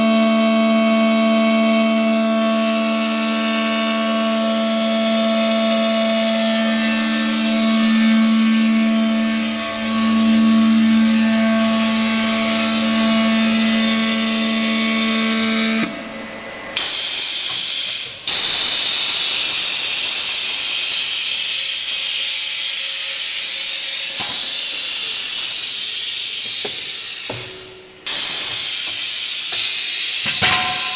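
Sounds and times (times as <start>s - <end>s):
machine hum: 2.4s - 22.7s, 23.6s - 30.9s
welding arc hissing: 16.8s - 30.9s.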